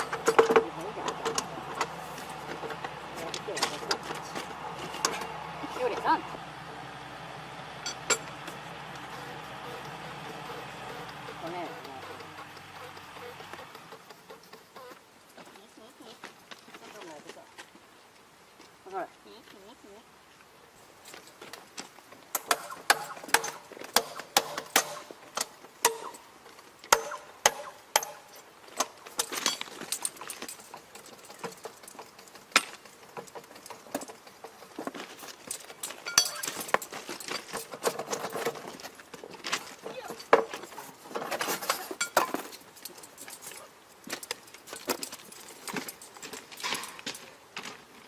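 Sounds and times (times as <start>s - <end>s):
metal tools clinking and knocking: 7.8s - 8.4s, 29.1s - 39.0s, 39.8s - 47.3s
metal jangling: 29.1s - 38.8s, 40.0s - 47.3s.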